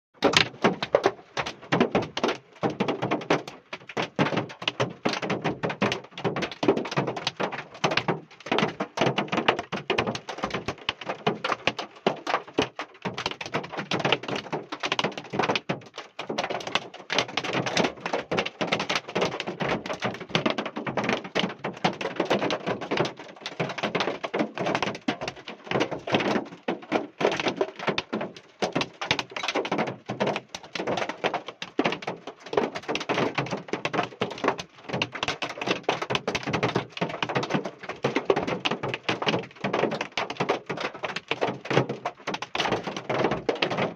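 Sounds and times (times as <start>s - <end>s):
hail clattering: 0.2s - 43.9s.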